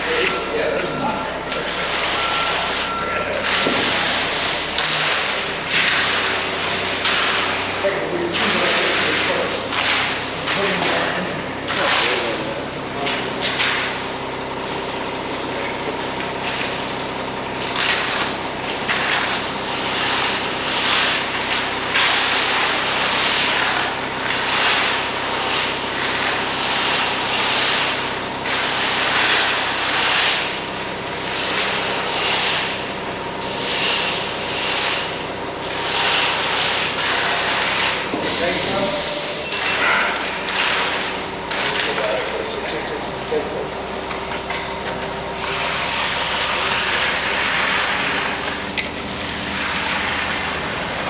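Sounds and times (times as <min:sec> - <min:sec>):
concrete swishing and scraping: 0:17.7 - 0:30.6, 0:31.2 - 0:42.8, 0:45.4 - 0:48.6, 0:49.2 - 0:51.0.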